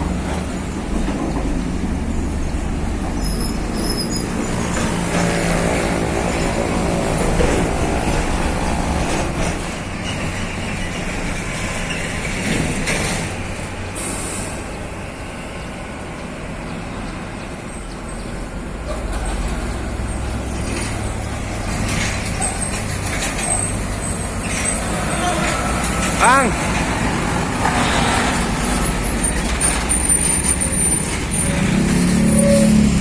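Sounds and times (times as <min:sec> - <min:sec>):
air brakes hissing: 0:13.9 - 0:15.1.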